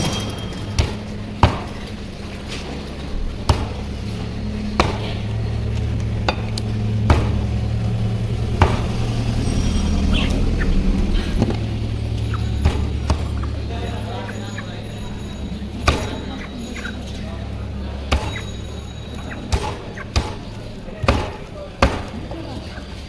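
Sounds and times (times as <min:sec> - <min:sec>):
steady low hum: 0:00.0 - 0:23.0
cleaver chopping on block: 0:00.8 - 0:02.0, 0:03.5 - 0:04.1, 0:04.8 - 0:05.3, 0:06.3 - 0:09.4, 0:15.8 - 0:16.3, 0:18.1 - 0:18.6, 0:19.4 - 0:22.3.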